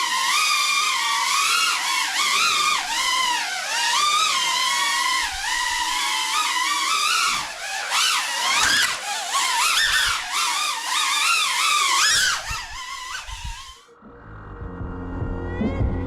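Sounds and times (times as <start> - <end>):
drone motors whining: 0.0 - 16.0
low steady hum: 13.9 - 16.0.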